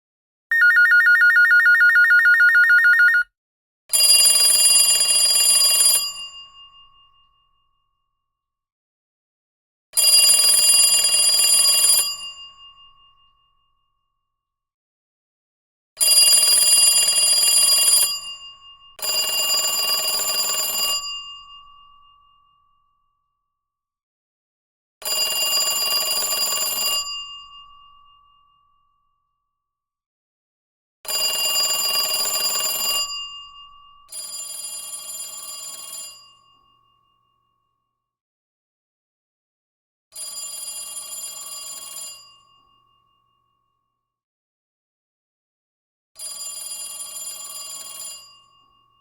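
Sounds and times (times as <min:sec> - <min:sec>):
telephone bell ringing: 0:00.5 - 0:03.2.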